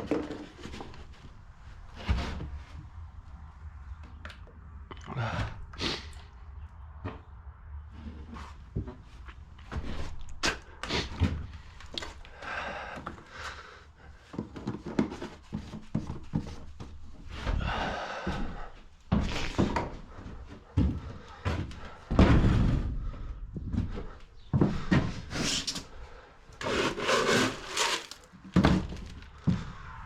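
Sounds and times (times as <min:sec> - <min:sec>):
rough scraping sounds: 0:26.6 - 0:28.4.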